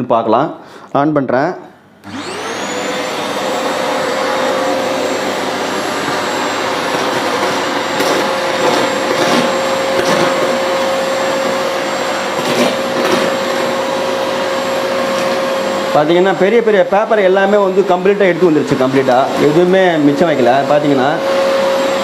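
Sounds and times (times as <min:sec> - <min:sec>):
vacuum cleaner whining: 0:02.0 - 0:22.0.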